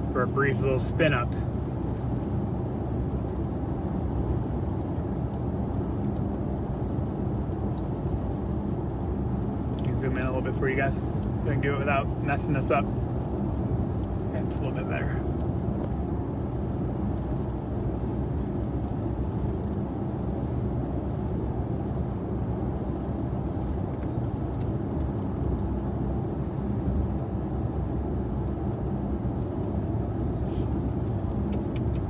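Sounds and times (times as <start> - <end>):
car cabin road and engine noise: 0.0 - 32.0.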